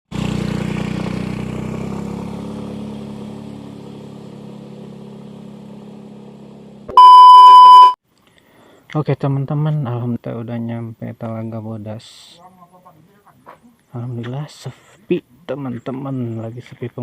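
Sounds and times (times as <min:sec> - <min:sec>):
high steady beep: 0:06.9 - 0:08.0.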